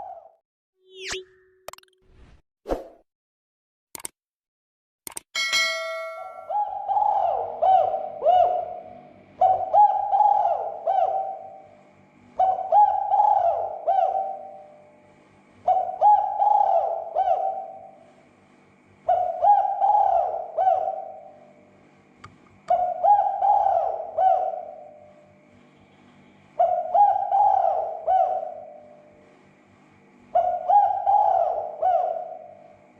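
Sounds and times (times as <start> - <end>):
dove cooing: 6.5 - 11.8, 12.4 - 14.7, 15.6 - 18.0, 19.1 - 21.4, 22.7 - 25.1, 26.6 - 29.0, 30.4 - 32.7.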